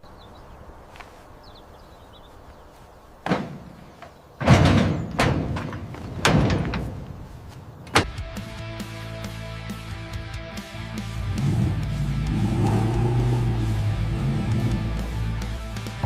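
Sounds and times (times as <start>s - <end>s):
heavy ringing thuds: 3.2s - 8.2s.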